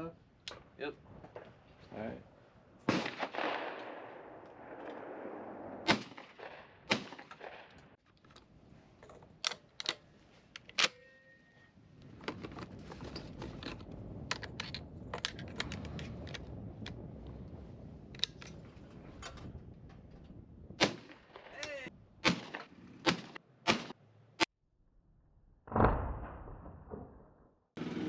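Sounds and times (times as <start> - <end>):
gunshots: 2.8 - 7.9, 20.8 - 24.0.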